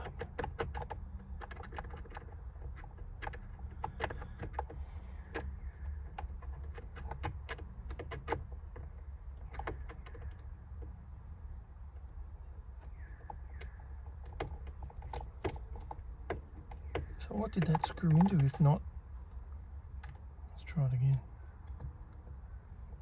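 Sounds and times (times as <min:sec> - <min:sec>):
clicks and rattles of screws and trim: 0:00.0 - 0:10.9.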